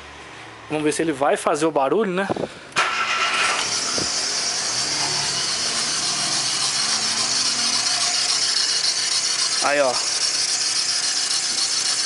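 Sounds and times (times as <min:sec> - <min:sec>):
car engine running: 0:02.8 - 0:12.0
high hissing belt noise: 0:04.1 - 0:12.0.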